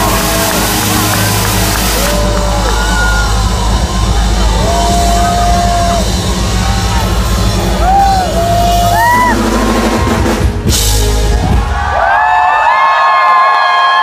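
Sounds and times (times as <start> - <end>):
live band music: 0.0 - 11.9.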